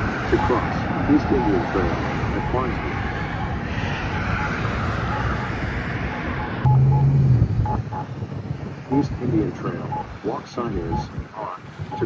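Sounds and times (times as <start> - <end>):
passing road traffic: 0.0 - 12.0
crosswalk button beeping: 1.3 - 2.8, 5.1 - 8.1, 9.9 - 10.1, 10.8 - 11.1.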